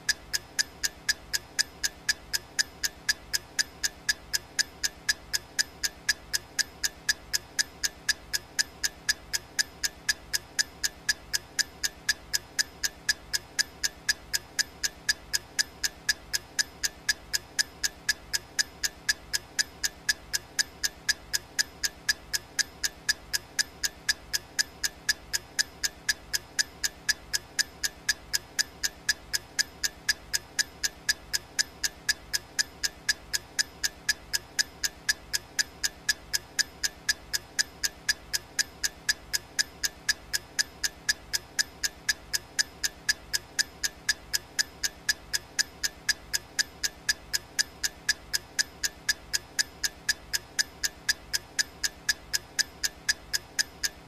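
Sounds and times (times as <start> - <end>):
timer ticking: 0.0 - 54.0.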